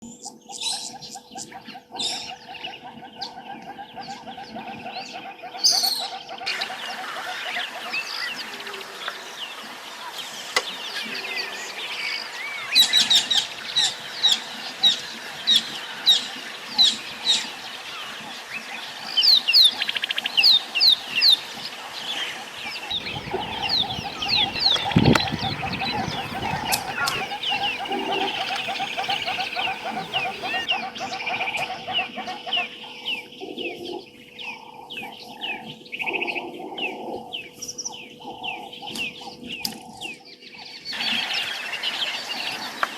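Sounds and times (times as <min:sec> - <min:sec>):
other bird calls: 0:22.6 - 0:40.0
bird chirps sliding downward: 0:22.9 - 0:30.7.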